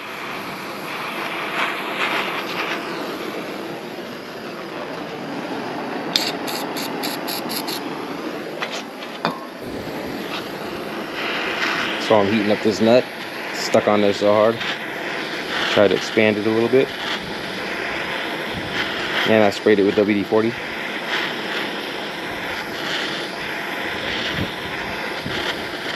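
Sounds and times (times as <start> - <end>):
gas torch flame hissing: 0.0 - 25.9
sharp ticks: 6.2 - 7.8.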